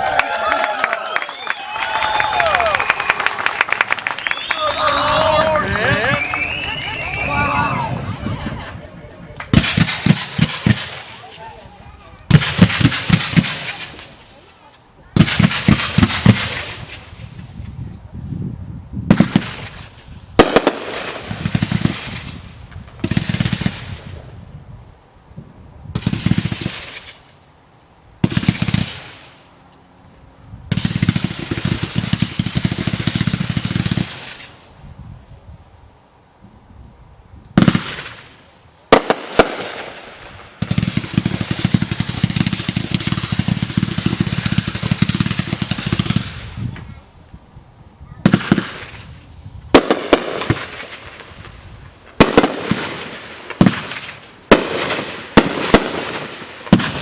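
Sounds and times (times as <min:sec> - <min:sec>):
firework bursts: 0:00.0 - 0:17.8, 0:19.1 - 0:24.4, 0:25.9 - 0:27.4, 0:28.2 - 0:29.6, 0:30.7 - 0:34.9, 0:37.5 - 0:46.9, 0:48.2 - 0:57.0
rapid firework popping: 0:09.1 - 0:14.5, 0:15.2 - 0:17.7, 0:19.1 - 0:24.3, 0:25.9 - 0:27.3, 0:28.2 - 0:29.4, 0:30.7 - 0:34.7, 0:37.6 - 0:46.9, 0:48.2 - 0:57.0
sharp firework bangs: 0:09.4 - 0:14.3, 0:15.2 - 0:17.3, 0:19.1 - 0:24.2, 0:28.2 - 0:29.4, 0:30.7 - 0:34.6, 0:37.6 - 0:46.8, 0:48.2 - 0:57.0.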